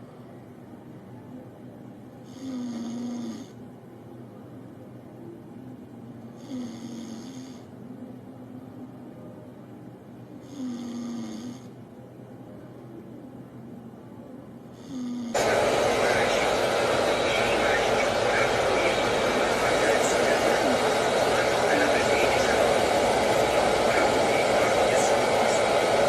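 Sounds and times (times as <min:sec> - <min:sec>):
man snoring: 0:02.3 - 0:03.6, 0:06.4 - 0:07.7, 0:10.4 - 0:11.7, 0:14.8 - 0:15.4
steady low hum: 0:11.7 - 0:26.0.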